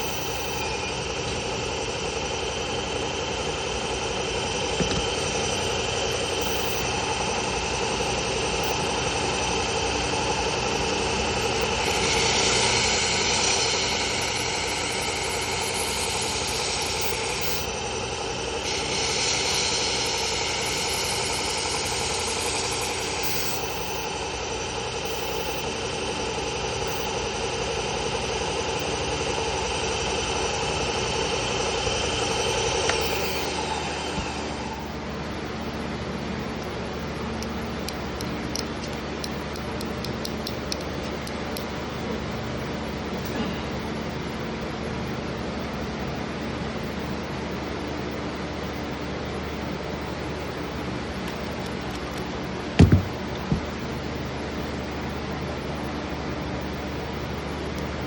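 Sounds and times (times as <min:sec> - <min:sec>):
belt sander running: 0:00.0 - 0:27.2, 0:29.4 - 0:42.2, 0:50.8 - 0:53.7.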